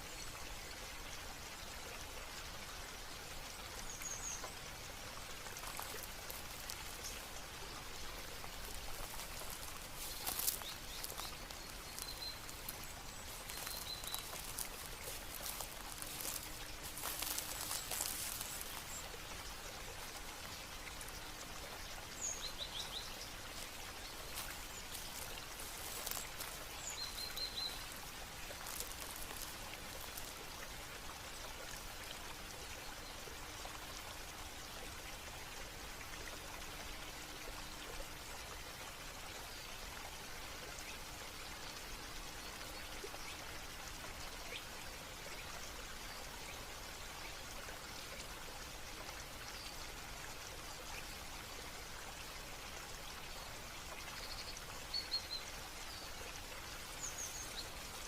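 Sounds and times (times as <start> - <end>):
running and trickling water: 0.0 - 58.0
water splashes: 3.3 - 32.0.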